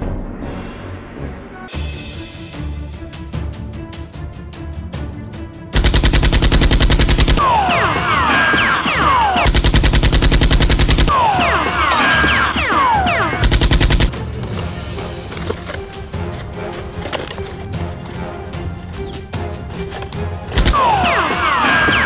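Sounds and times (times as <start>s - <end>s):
machine-gun fire: 5.8s - 7.4s, 8.5s - 11.2s, 13.3s - 14.1s.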